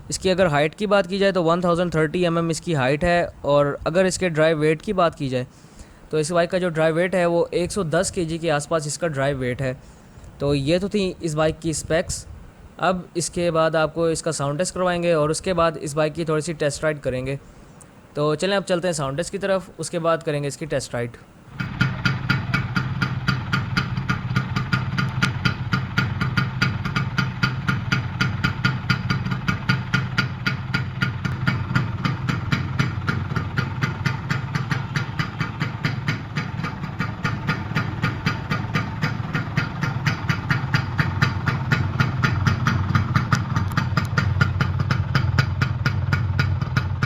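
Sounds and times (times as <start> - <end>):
motorcycle engine idling: 21.5 - 47.0.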